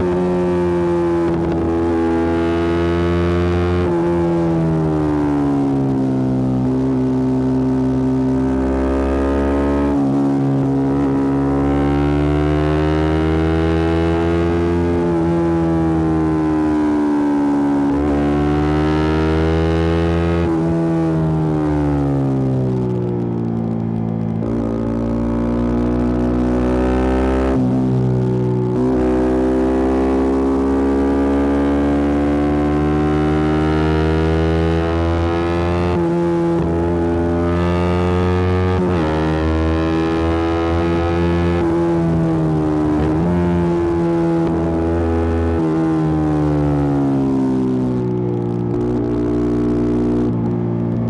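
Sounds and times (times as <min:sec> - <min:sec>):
motorcycle engine revving: 0:00.0 - 0:51.0.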